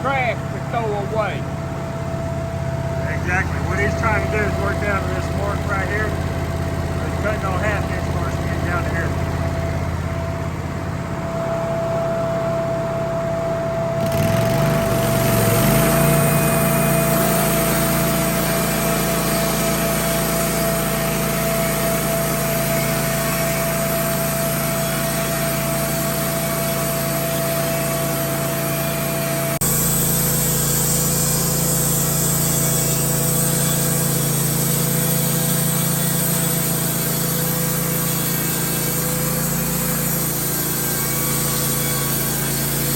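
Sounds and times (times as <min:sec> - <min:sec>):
sawmill engine running: 0:00.0 - 0:42.9
band blade sawing through log: 0:14.0 - 0:42.9.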